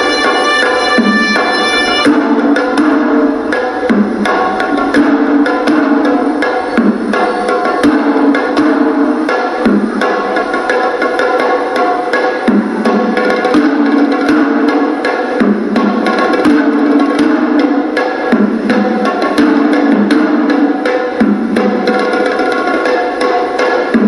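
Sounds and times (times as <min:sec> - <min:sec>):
shrill double-reed pipe melody: 0:00.0 - 0:02.4
fast ritual drumming: 0:00.0 - 0:24.0.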